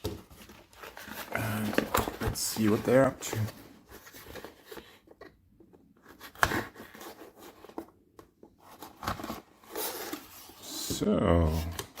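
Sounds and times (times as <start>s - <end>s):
packing material rustling: 0.0s - 5.0s.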